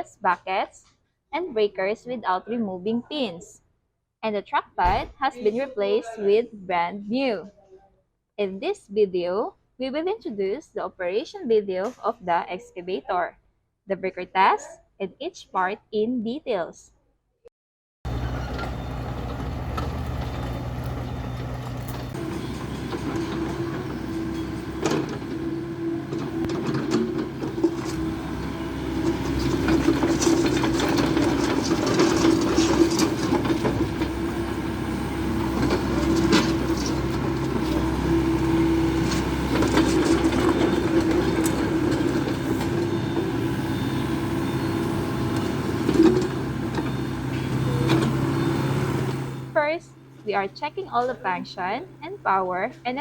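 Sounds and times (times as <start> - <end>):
excavator diesel engine running: 18.1 - 53.0.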